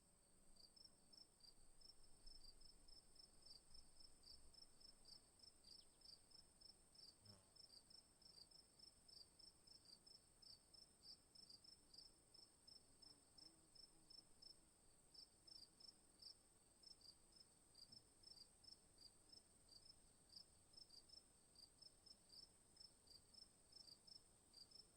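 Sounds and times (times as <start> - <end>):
crickets chirping: 0.6 - 12.8.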